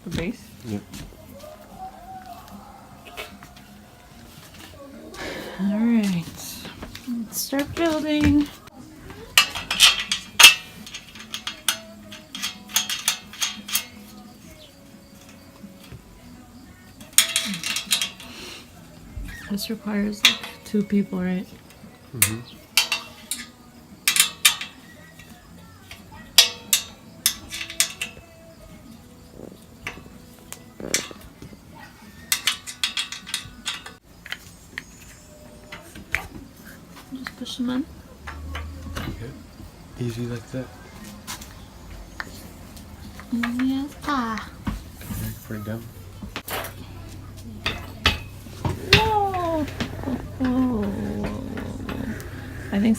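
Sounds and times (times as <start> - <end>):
metal cage parts clinking: 7.4 - 29.1, 29.8 - 34.0, 47.6 - 52.9.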